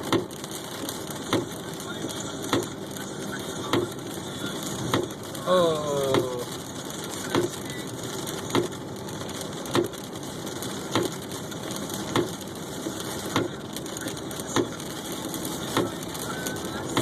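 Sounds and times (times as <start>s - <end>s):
rain hissing: 0.0s - 17.0s
road noise inside car: 0.0s - 17.0s
windshield wipers knocking: 9.7s - 10.0s.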